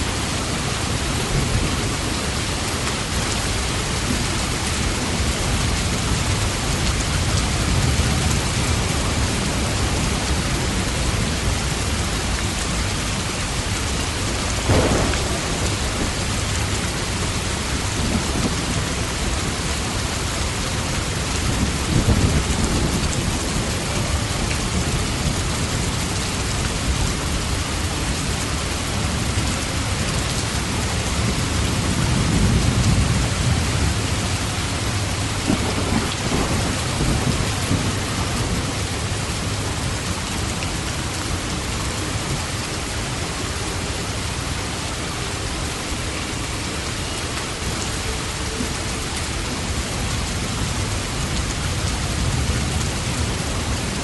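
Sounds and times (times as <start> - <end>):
heavy rain: 0.0 - 54.0
thunder rumbling: 14.3 - 29.5, 31.2 - 40.4.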